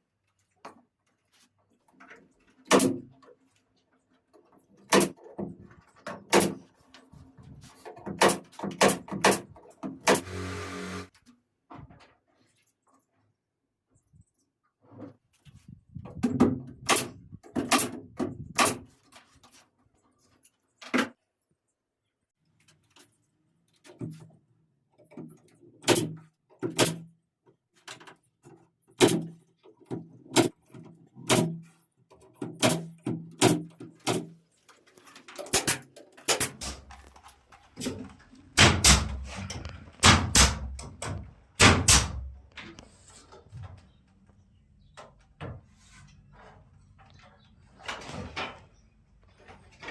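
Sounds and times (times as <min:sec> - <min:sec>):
woodworking knocks and thuds: 0:07.9 - 0:10.4, 0:15.9 - 0:18.9, 0:37.8 - 0:42.8.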